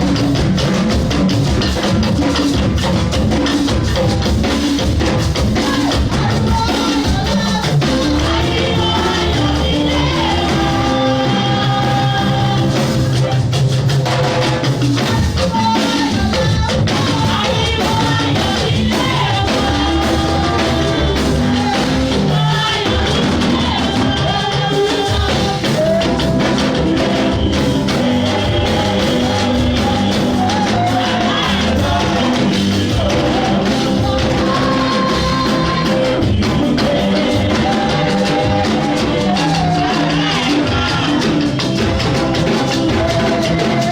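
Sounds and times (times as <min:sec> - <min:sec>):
band with drums: 0:00.0 - 0:43.9
voices singing a melody: 0:04.7 - 0:13.8, 0:14.9 - 0:43.9.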